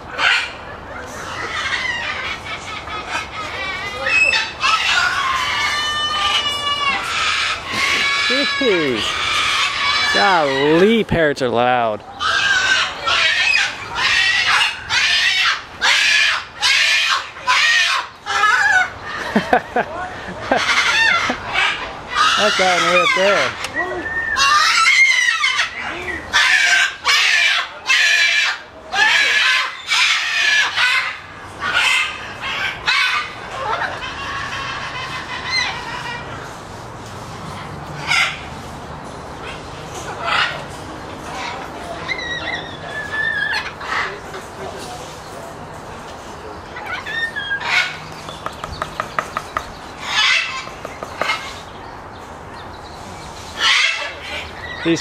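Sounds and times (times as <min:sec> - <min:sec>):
parrot squawking: 0:00.1 - 0:10.9, 0:12.2 - 0:19.2, 0:20.6 - 0:23.7, 0:24.3 - 0:36.5, 0:37.6 - 0:38.5, 0:46.8 - 0:51.7, 0:53.6 - 0:55.0.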